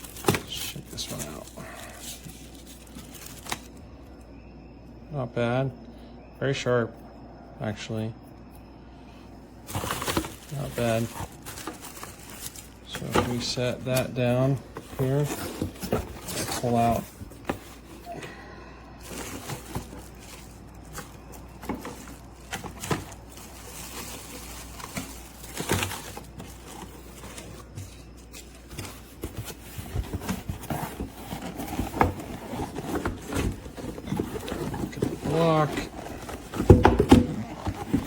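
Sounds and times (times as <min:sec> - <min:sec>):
packaging rustling: 0:00.0 - 0:03.9, 0:09.6 - 0:18.4, 0:19.0 - 0:38.0.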